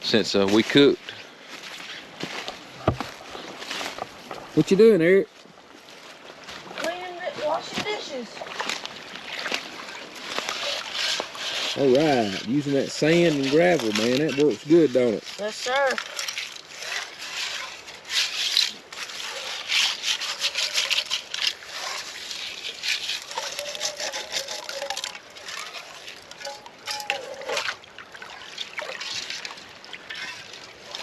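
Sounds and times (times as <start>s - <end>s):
water splashing: 6.6s - 31.0s
gritty scraping of dish: 10.5s - 27.8s.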